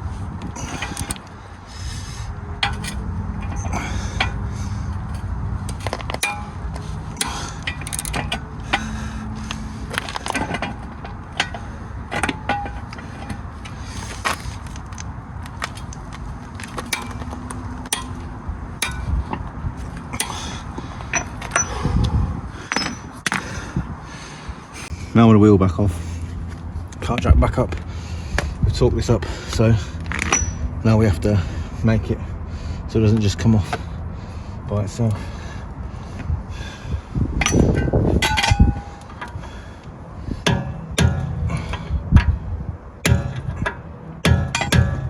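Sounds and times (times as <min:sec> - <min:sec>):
metal tools clinking: 0:00.6 - 0:01.4, 0:02.6 - 0:04.4, 0:05.0 - 0:09.1, 0:09.9 - 0:21.9, 0:22.6 - 0:23.4, 0:30.0 - 0:30.8, 0:37.4 - 0:39.6, 0:43.0 - 0:45.0.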